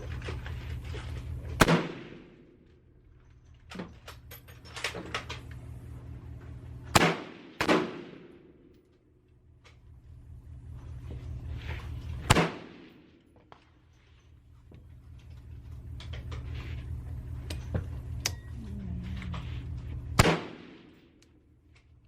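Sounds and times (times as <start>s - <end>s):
gunshots with echo: 7.0s - 8.5s, 20.2s - 21.0s.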